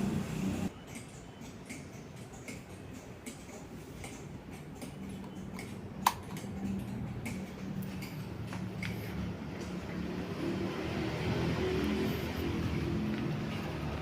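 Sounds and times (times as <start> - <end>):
ceiling fan motor hum: 0.0 - 14.0.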